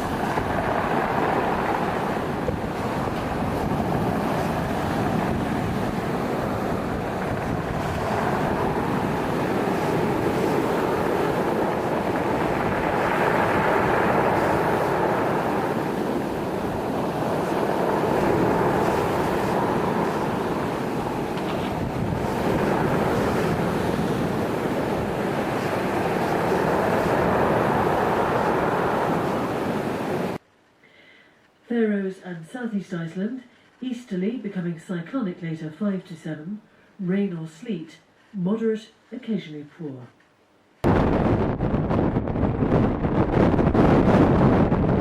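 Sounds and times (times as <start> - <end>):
sea surf: 0.0 - 30.4
stormy wind: 0.0 - 30.4, 40.6 - 45.0
wind buffeting the microphone: 0.0 - 30.4, 40.8 - 45.0.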